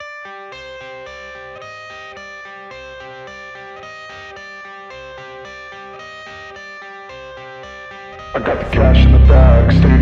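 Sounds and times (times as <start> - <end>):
plucked guitar over a beat: 7.9 - 10.0.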